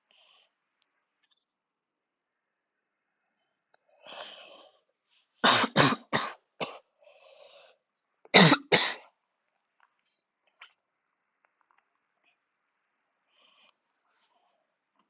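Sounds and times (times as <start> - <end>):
person coughing harshly: 5.4 - 6.8, 8.4 - 9.0.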